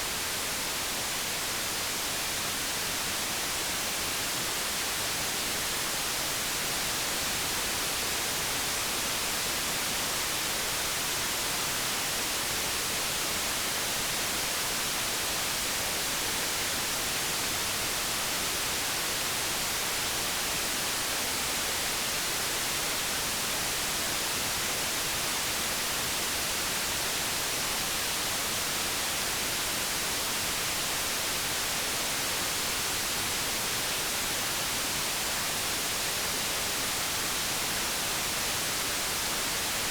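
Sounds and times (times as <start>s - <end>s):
white noise hiss: 0.0s - 39.9s.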